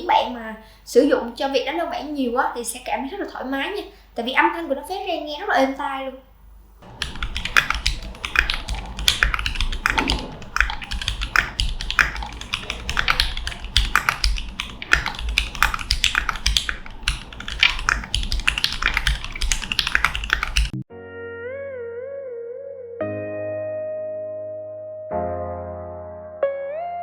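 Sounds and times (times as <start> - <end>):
rapid mechanical keyboard typing: 6.8 - 20.8.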